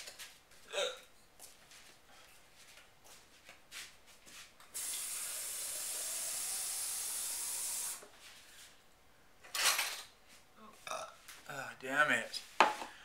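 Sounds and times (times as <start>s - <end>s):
water tap running: 4.8s - 8.0s.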